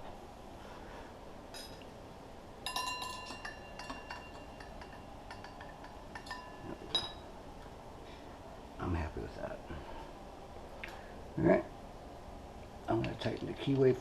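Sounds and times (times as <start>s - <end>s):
metal tools clinking: 1.5s - 1.9s, 2.7s - 7.3s.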